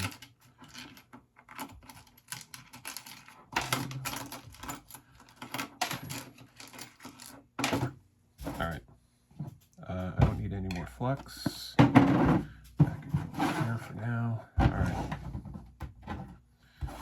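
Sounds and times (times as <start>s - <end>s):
small metal parts clicking: 0.0s - 7.4s.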